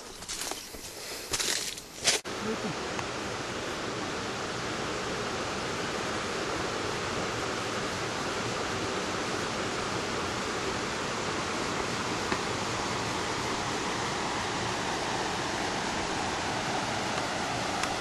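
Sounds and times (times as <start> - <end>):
waterfall rushing: 2.3 - 18.0.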